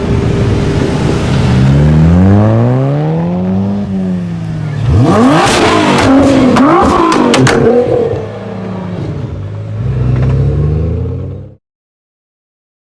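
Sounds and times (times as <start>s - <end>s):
car engine revving hard: 0.2s - 4.1s, 4.7s - 9.2s
exhaust cracks: 5.0s - 8.3s.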